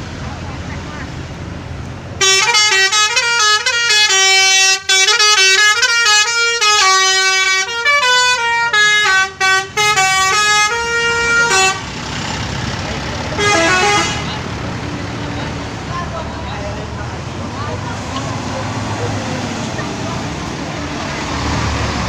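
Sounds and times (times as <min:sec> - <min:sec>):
musical bus air horn tune: 0:02.2 - 0:11.9, 0:13.4 - 0:14.4.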